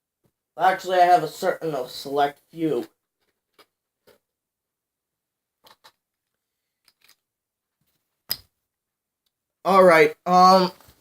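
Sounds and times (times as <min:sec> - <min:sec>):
objects clicking and knocking: 0:05.6 - 0:06.2, 0:06.8 - 0:08.5.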